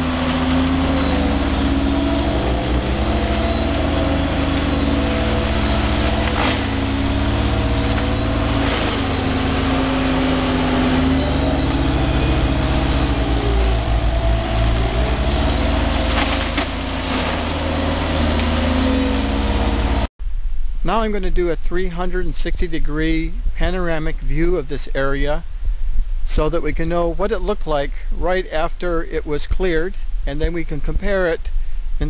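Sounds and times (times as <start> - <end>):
brambles cracking and splintering: 0.0 - 10.8, 14.6 - 18.9
mulcher engine running under load: 0.0 - 20.1.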